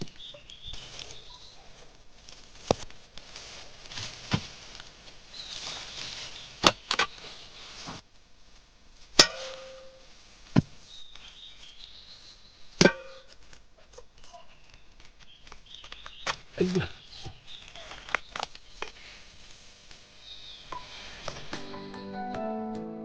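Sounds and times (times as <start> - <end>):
bird chirping: 0.0 - 1.7, 10.8 - 13.3, 14.2 - 18.9, 20.2 - 22.3
rustling: 0.0 - 21.7
metal hand tool strikes: 9.2 - 10.0, 12.8 - 13.3.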